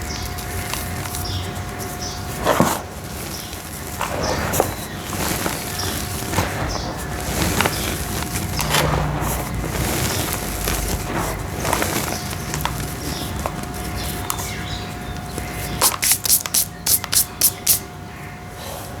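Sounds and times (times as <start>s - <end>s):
dry dirt clumps crumbling: 0.0s - 16.1s
crisp crunches: 0.0s - 16.7s.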